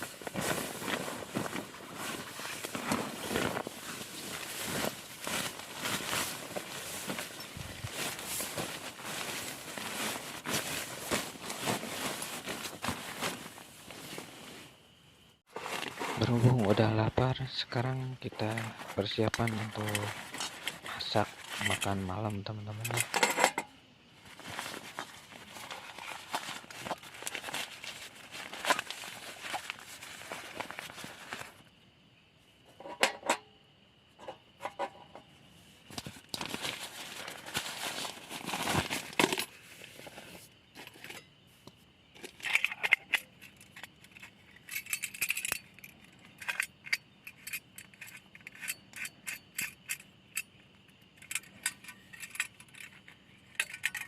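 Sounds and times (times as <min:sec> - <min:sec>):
bags rustling and crinkling: 0:00.0 - 0:23.5, 0:24.2 - 0:31.7, 0:35.8 - 0:41.2.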